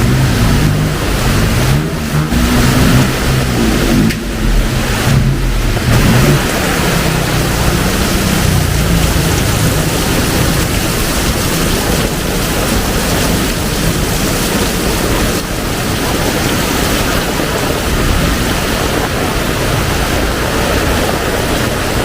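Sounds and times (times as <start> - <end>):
low rumble: 0.0 - 14.2
heavy rain pouring: 0.0 - 22.0.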